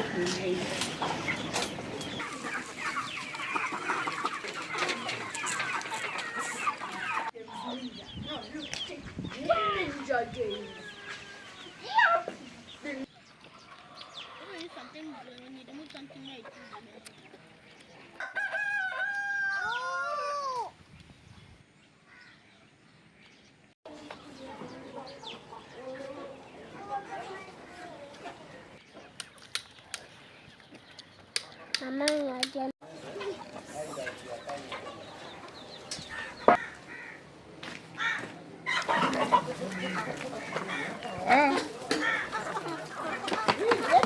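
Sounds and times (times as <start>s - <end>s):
chickens clucking: 0.0s - 20.6s, 23.9s - 31.8s, 32.8s - 44.0s
rooster crowing: 18.2s - 20.6s.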